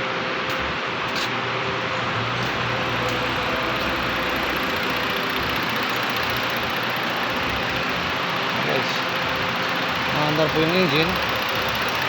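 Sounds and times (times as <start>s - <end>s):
car engine idling: 1.8s - 12.0s.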